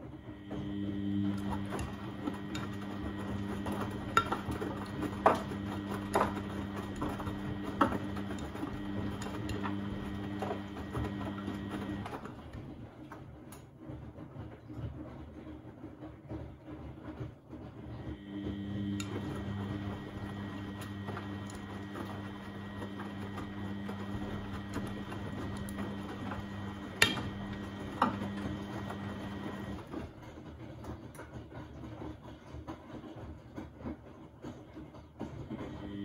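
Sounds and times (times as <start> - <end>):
washing machine motor hum and whine: 0.0 - 36.0.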